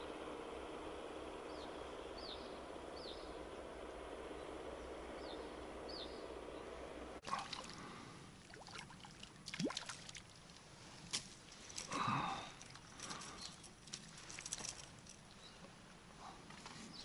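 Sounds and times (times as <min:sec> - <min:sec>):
water trickling and splashing: 0:07.2 - 0:15.4.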